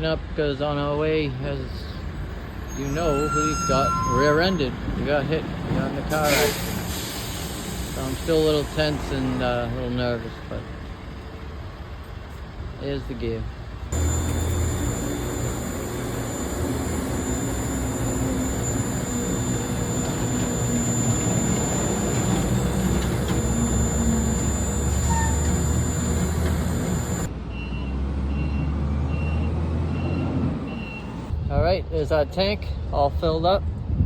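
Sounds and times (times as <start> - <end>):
faint high beep: 2.7 - 4.7, 14.0 - 31.1
pump humming and hissing: 14.0 - 27.3.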